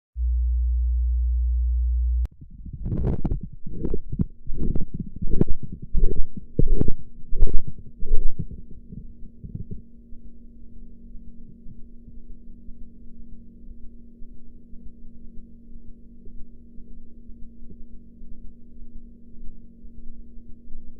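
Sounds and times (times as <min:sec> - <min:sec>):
low background hum: 0:00.2 - 0:20.9
rhythmic heartbeat thumps: 0:02.4 - 0:09.9.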